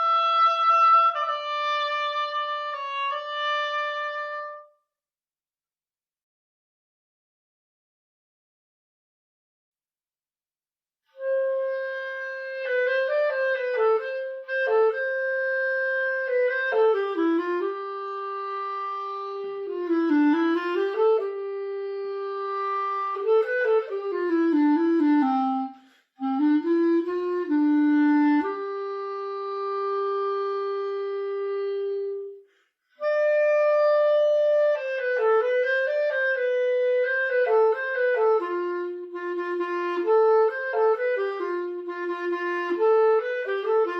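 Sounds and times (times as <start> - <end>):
solo instrument melody: 0.0 - 5.0, 11.0 - 43.9.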